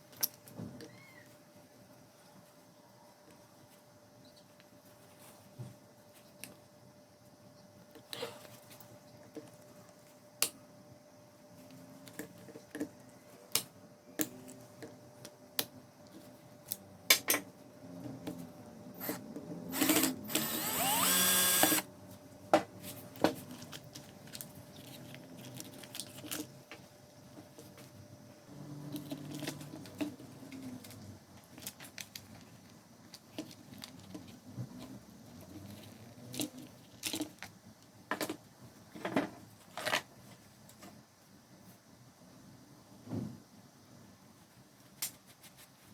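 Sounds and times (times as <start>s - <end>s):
power drill spinning up: 19.0s - 21.9s.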